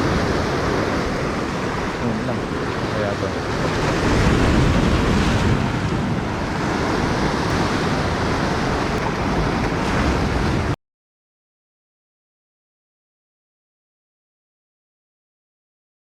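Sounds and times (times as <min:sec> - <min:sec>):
sea waves breaking: 0:00.0 - 0:10.8
wind buffeting microphone: 0:00.0 - 0:10.8.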